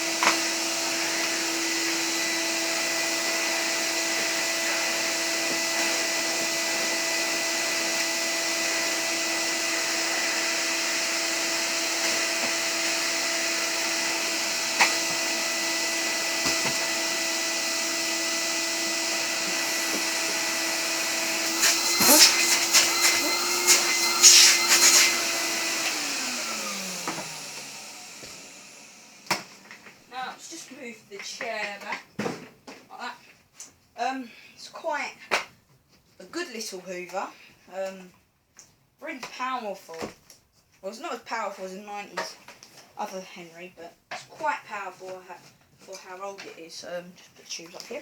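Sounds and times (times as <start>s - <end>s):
vacuum cleaner running: 0.0s - 31.8s.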